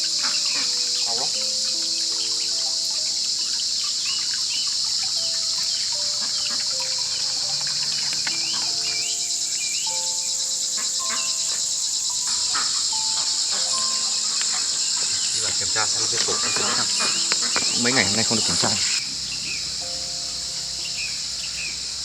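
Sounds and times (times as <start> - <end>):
bird chirps: 0.0 - 22.0
high-pitched insect chorus: 0.0 - 22.0
soft melody of held notes: 0.0 - 22.0.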